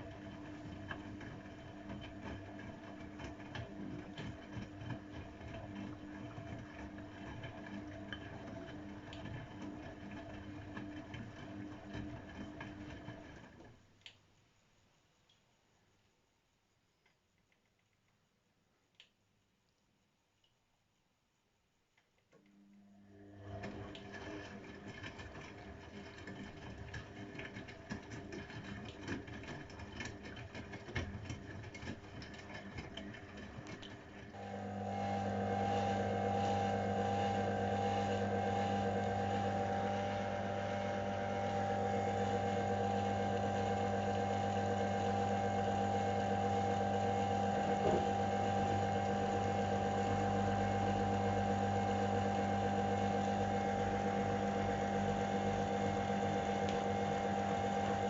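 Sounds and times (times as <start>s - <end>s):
washing machine churning rumble: 0.0s - 13.8s, 23.0s - 58.0s
motor humming: 34.3s - 58.0s.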